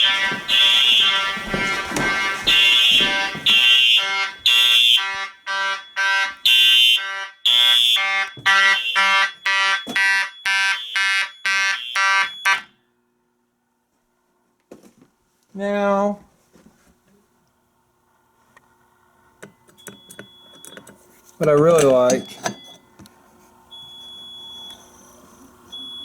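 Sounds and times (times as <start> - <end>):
fire alarm horns pulsing: 0.0 - 12.8.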